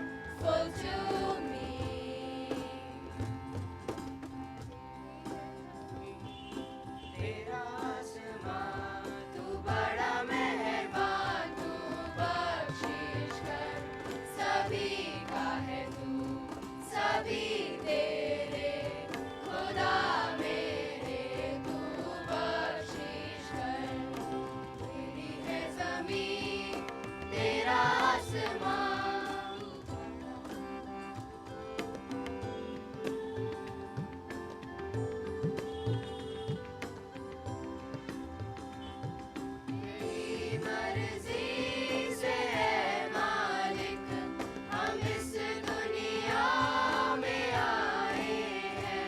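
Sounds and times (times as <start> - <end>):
choir singing: 0.0 - 3.2, 7.0 - 30.8, 39.8 - 49.0
instrumental accompaniment: 0.0 - 49.0
steady percussion beat: 0.0 - 49.0.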